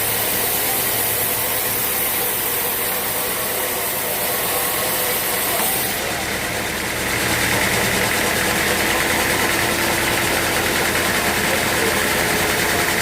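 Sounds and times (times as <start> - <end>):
sawmill machinery running: 0.0 - 13.0.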